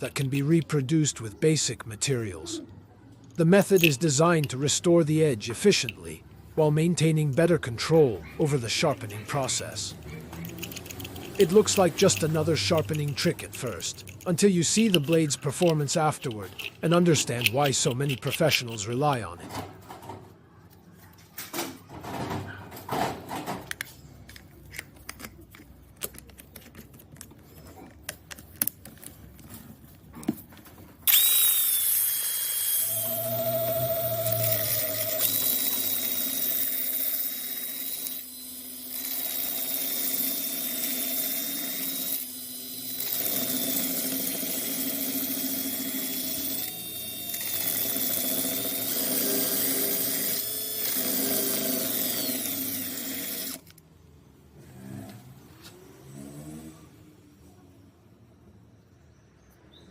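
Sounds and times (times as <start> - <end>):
handling clicks and knocks: 10.0 - 20.3, 21.5 - 31.0
power tool whining: 31.0 - 53.8.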